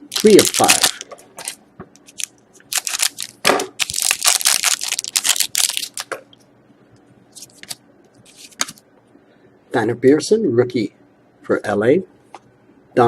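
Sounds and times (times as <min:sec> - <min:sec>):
plastic packaging crinkling: 0:00.0 - 0:06.2, 0:07.4 - 0:08.8.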